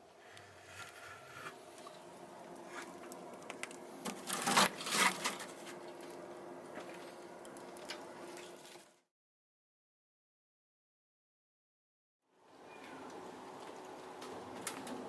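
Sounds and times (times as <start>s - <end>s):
faint steady hum: 0.0s - 9.0s
rustling scrape: 0.4s - 1.7s, 4.0s - 5.8s.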